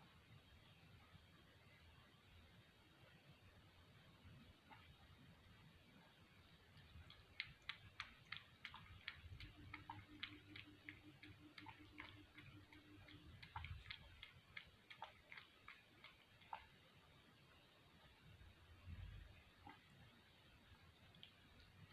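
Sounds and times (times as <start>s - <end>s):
cat lapping milk: 6.4s - 17.0s.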